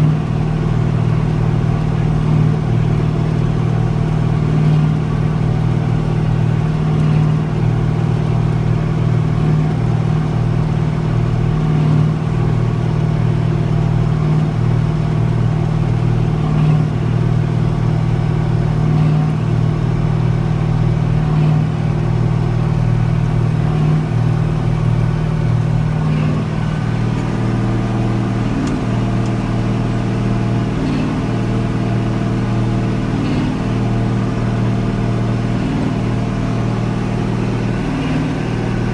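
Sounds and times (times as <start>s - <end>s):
diesel tractor engine under load: 0.0s - 38.9s.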